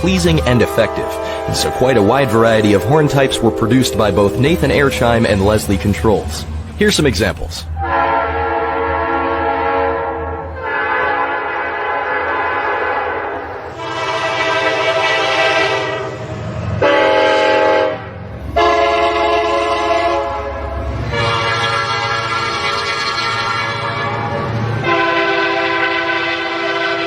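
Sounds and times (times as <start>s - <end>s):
locomotive air horns: 0.0s - 6.4s, 7.8s - 27.0s
low engine rumble: 0.0s - 9.1s.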